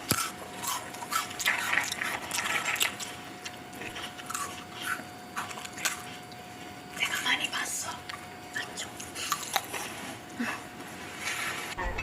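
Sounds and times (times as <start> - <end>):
person chewing food: 0.0 - 7.0, 8.0 - 11.4.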